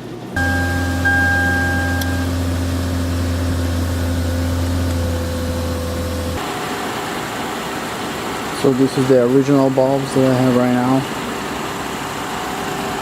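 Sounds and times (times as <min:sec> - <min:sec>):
car engine idling: 0:00.4 - 0:06.4
thin high tone: 0:00.4 - 0:06.4.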